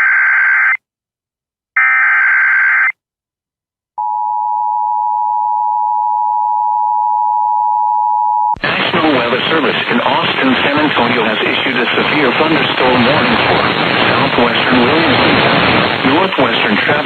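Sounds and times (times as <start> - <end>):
recorded voice speaking: 8.6 - 17.0.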